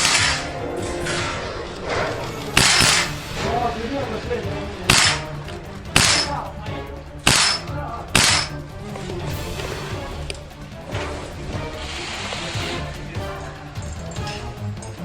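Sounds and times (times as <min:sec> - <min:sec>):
airsoft rifle shots: 0:00.0 - 0:00.6, 0:02.6 - 0:03.2, 0:04.9 - 0:06.4, 0:07.3 - 0:08.6.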